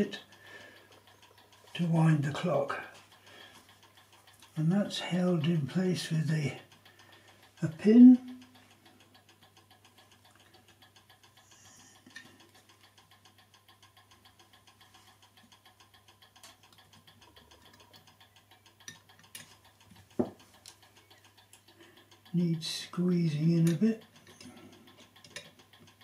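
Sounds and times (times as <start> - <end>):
clock ticking: 0.0 - 26.0
small metal parts clicking: 16.2 - 22.8, 23.4 - 26.0.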